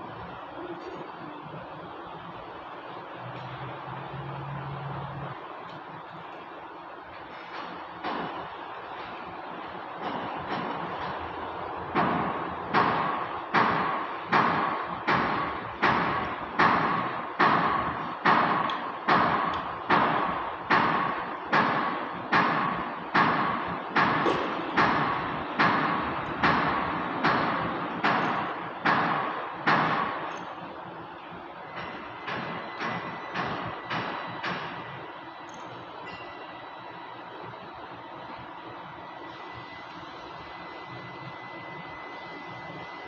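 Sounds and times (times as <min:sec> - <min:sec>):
hammer blows: 0:11.9 - 0:30.5.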